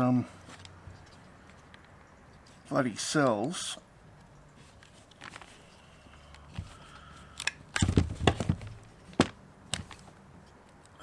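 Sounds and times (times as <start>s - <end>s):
hand cutters crunching battery cells: 7.3s - 7.8s.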